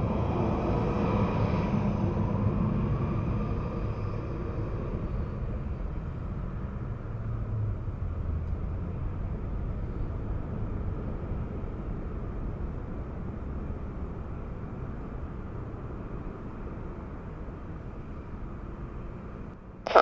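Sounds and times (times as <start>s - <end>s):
jet engine high whine: 0.0s - 7.0s.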